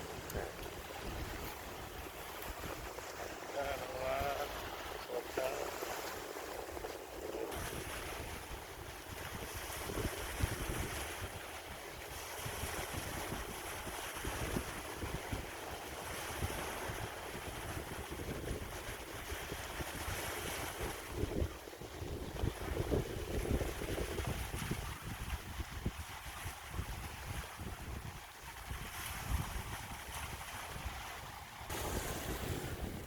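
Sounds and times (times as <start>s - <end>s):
sea waves washing: 0.0s - 33.0s
wind buffeting the microphone: 0.0s - 33.0s.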